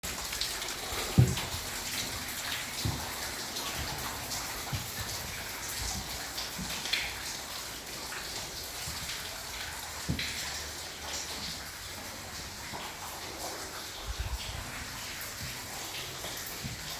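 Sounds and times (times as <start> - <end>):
steady rain: 0.0 - 16.9
water drips: 0.0 - 16.9
soft low thumps: 1.0 - 7.0.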